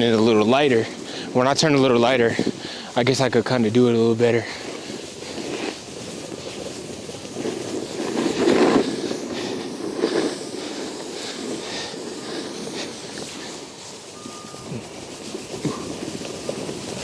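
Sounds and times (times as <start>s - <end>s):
snowboard scraping over snow: 0.0s - 17.0s
wind rushing: 7.4s - 17.0s.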